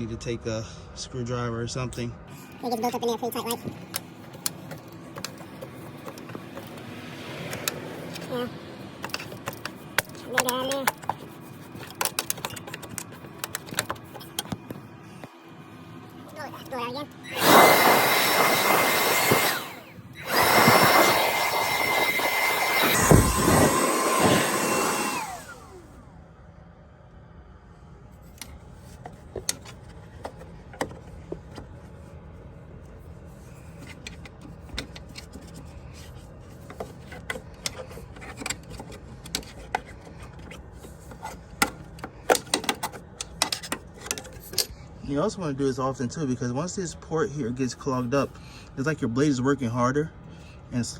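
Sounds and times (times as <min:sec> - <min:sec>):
cordless blower motor whine: 0:03.6 - 0:16.2, 0:17.1 - 0:26.4.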